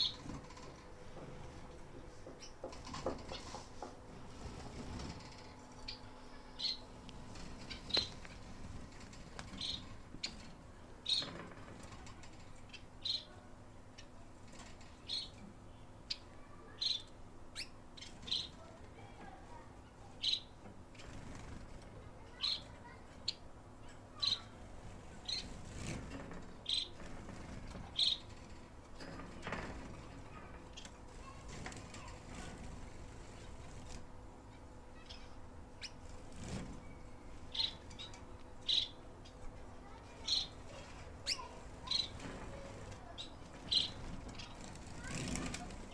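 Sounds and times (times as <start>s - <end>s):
finches chirping: 0.0s - 0.8s, 4.8s - 12.0s, 12.6s - 14.2s, 14.9s - 18.8s, 20.1s - 20.6s, 22.2s - 27.2s, 27.8s - 29.6s, 35.0s - 36.2s, 36.8s - 45.9s.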